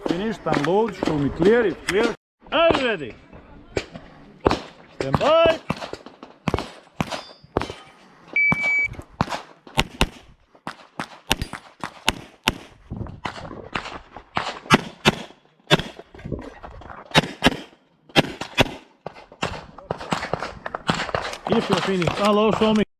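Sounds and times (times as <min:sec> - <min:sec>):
pistol shots: 0:04.4 - 0:07.8, 0:09.2 - 0:16.0, 0:17.1 - 0:22.3
shot timer beep: 0:08.4 - 0:09.0.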